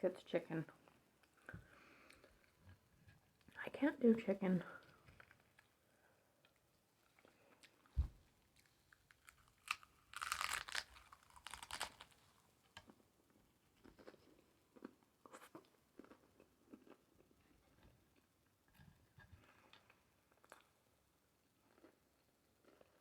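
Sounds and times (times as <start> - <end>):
low thump: 8.0 - 8.2
taco shell crunching: 8.6 - 12.4.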